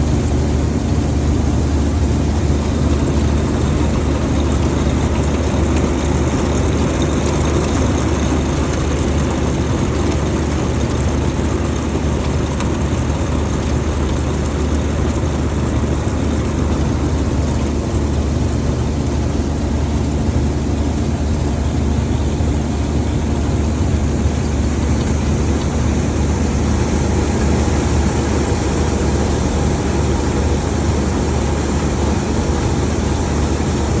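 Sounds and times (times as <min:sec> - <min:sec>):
combine harvester running: 0:00.0 - 0:34.0.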